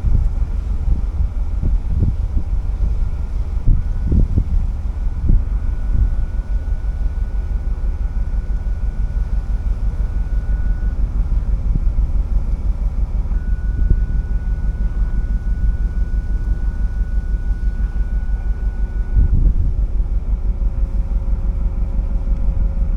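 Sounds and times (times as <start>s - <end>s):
wind buffeting microphone: 0.0s - 22.9s
thin steady high tone: 3.2s - 19.4s.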